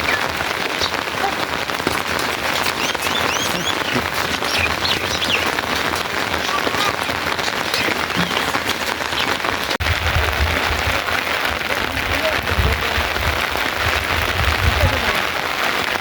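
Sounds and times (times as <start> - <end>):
steady rain falling: 0.0 - 16.0
small bird chirping: 2.5 - 9.4.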